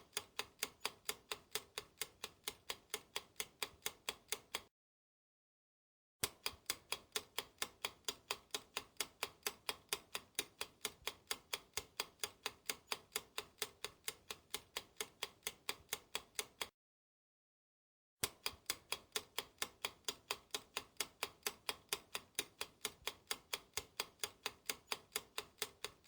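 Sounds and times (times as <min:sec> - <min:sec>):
clock ticking: 0:18.2 - 0:26.0.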